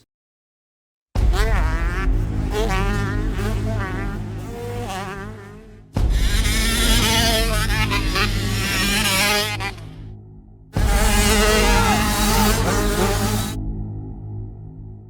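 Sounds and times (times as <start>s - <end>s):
motocross bike engines revving: 2.0s - 10.0s, 10.8s - 13.6s.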